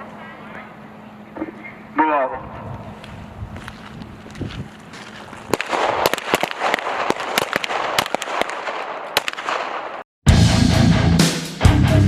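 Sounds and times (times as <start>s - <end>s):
handguns firing: 5.5s - 10.0s.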